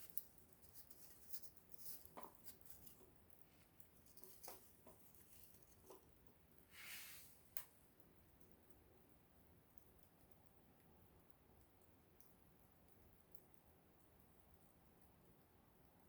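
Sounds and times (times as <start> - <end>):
fire hissing: 6.6 - 7.6.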